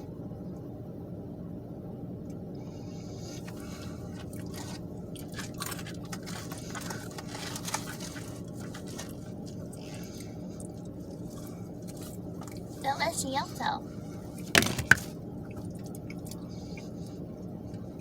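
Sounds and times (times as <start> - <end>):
crunchy chewing: 3.2 - 12.8, 14.0 - 17.9.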